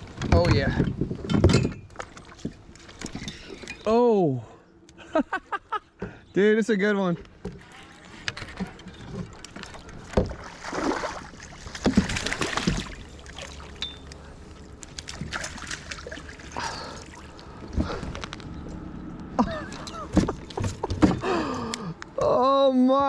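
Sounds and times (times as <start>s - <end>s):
water splashing beside boat: 0.0s - 3.8s, 7.3s - 18.4s, 19.4s - 21.8s.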